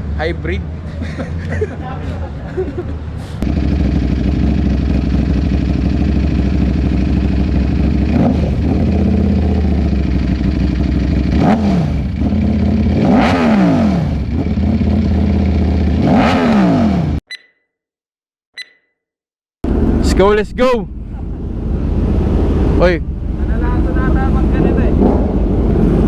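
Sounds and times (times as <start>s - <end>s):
motorcycle engine revving: 3.4s - 17.2s
short high beep: 17.3s - 17.7s, 18.6s - 19.0s.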